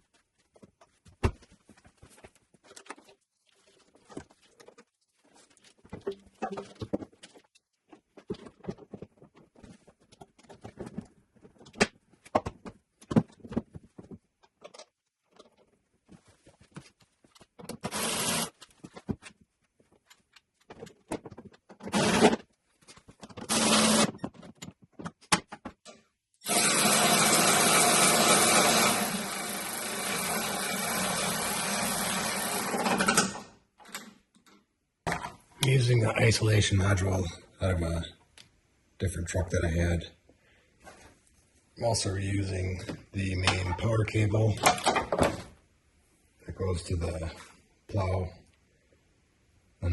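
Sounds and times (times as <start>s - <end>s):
power tool running: 17.8s - 18.5s, 21.9s - 22.3s, 23.5s - 24.2s, 26.4s - 33.4s.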